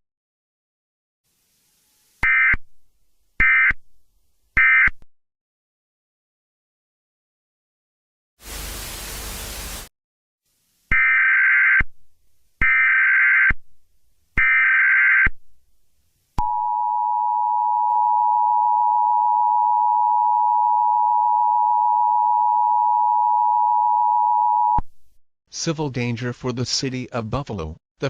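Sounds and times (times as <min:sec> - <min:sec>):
burst of static: 0:08.4 - 0:09.9.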